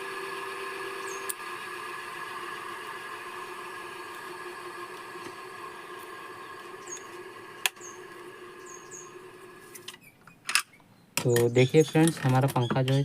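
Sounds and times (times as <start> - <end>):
ceiling fan motor whirring: 0.0 - 10.1.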